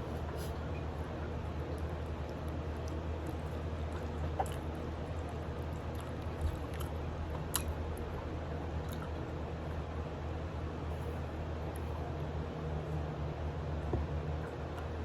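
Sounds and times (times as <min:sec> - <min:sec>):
steady low hum: 0:00.0 - 0:15.0
chewing: 0:00.4 - 0:09.3.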